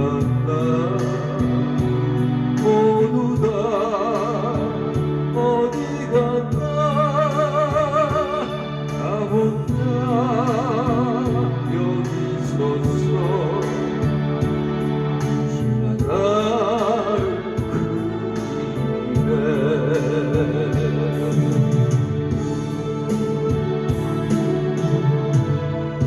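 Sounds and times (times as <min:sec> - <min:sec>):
electronic keyboard playing slow song: 0:00.0 - 0:26.0
held bass notes: 0:00.0 - 0:26.0
drum machine beat: 0:17.2 - 0:19.7, 0:20.3 - 0:26.0.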